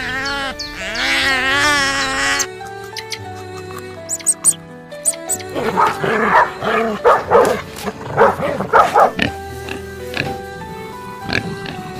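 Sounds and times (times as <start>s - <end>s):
sheep bleating: 0.0s - 4.5s
background music with held notes: 0.0s - 11.9s.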